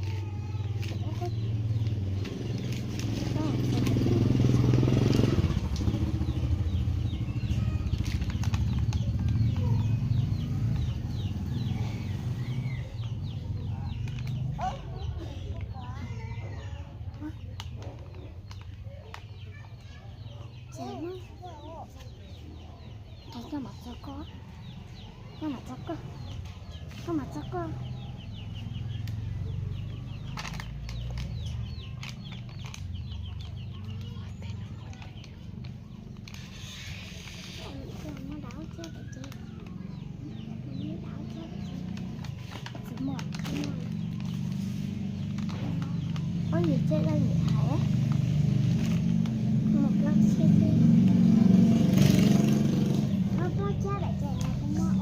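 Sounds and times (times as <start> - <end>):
birds chirping: 0.0 - 55.0
engine humming: 0.0 - 55.0.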